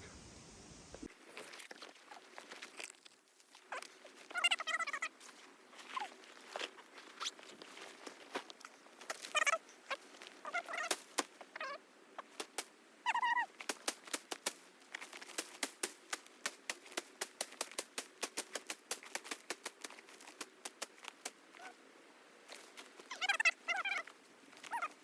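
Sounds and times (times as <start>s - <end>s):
branches snapping: 6.4s - 11.6s, 12.2s - 12.8s, 13.5s - 21.8s.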